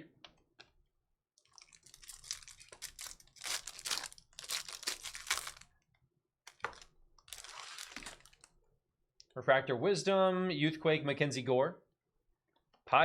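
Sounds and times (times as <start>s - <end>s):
foil wrapper crinkling and tearing: 1.4s - 5.7s, 6.5s - 8.5s.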